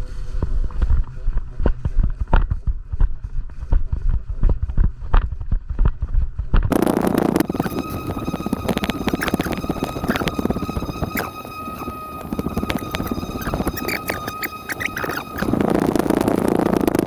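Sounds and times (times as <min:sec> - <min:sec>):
rush of noise: 0:06.7 - 0:17.0.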